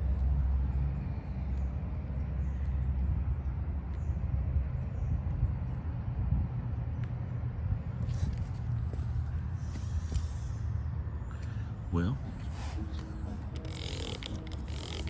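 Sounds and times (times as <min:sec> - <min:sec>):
vehicle engine running: 0:07.3 - 0:15.0.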